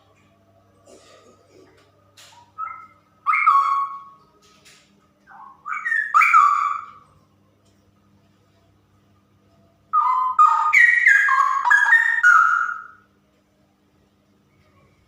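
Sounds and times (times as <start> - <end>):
bird singing whistled phrases: 2.6 - 4.2, 5.3 - 7.0, 9.9 - 13.0.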